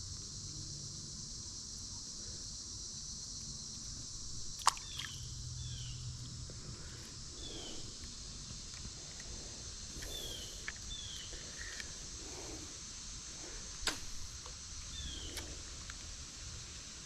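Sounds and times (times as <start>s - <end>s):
insect trilling: 0.0s - 17.0s
sharp click: 13.8s - 14.2s.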